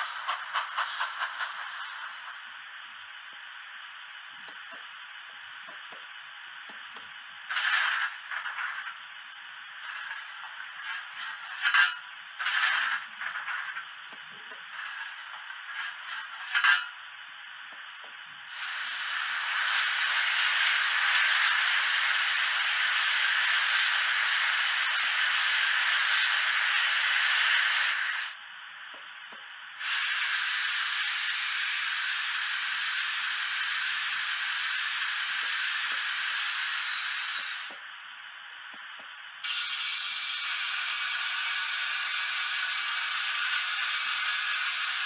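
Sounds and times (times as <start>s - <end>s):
recorded steam hissing: 0.0s - 45.0s.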